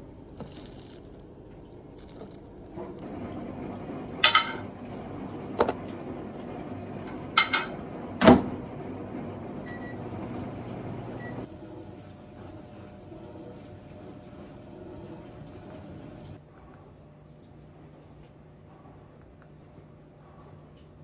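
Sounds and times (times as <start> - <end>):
appliance hum: 0.0 - 16.6.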